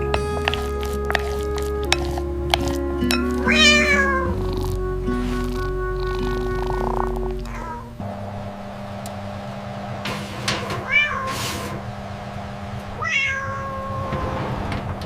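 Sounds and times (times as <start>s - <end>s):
steady low tone: 0.0s - 10.7s
cat meowing: 3.4s - 4.8s, 6.3s - 8.0s, 10.9s - 11.4s, 13.0s - 14.2s.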